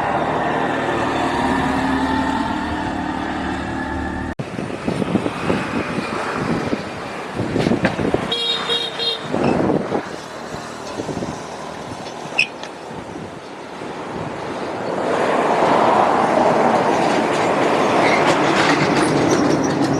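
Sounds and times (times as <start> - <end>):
vehicle passing: 0.0 - 4.4
roadside traffic noise: 0.0 - 19.9
vehicle horn toot: 0.8 - 4.4.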